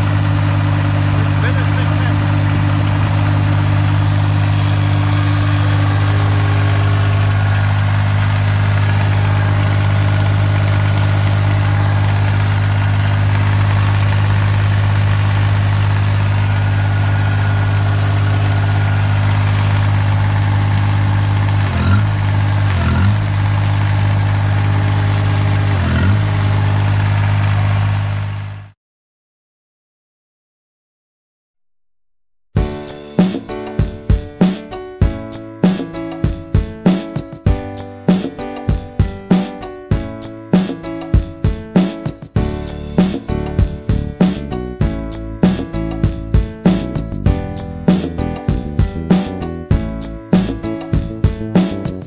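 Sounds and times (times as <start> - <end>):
vehicle engine droning: 0.0 - 28.8.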